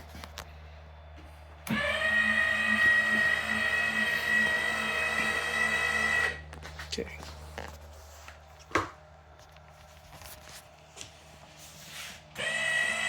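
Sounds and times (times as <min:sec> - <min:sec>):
small electric motor whining: 0:01.6 - 0:06.5, 0:12.3 - 0:13.0.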